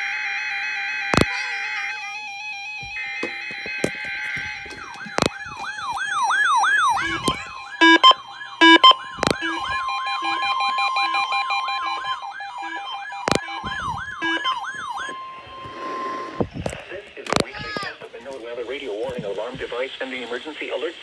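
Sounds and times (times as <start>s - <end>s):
falling siren-like alarm sweep: 0.0s - 16.8s
sharp clicks: 1.1s - 1.4s, 3.2s - 10.5s, 11.9s - 19.7s
steady alert tone: 6.5s - 16.2s.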